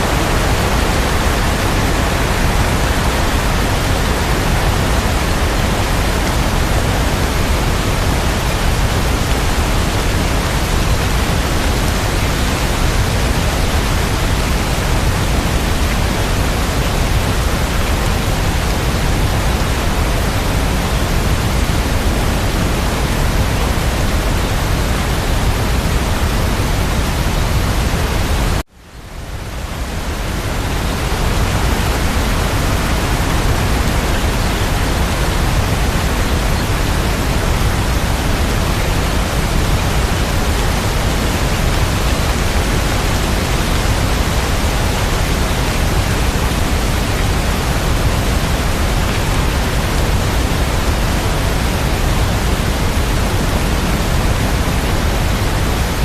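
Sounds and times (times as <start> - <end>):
heavy steady rain: 0.0 - 56.0.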